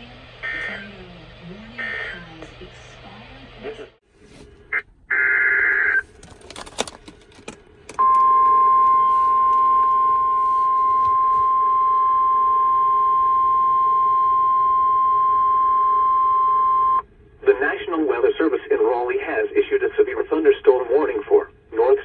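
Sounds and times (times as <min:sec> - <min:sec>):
steady warning alarm tone: 0:00.0 - 0:02.4, 0:08.0 - 0:17.0.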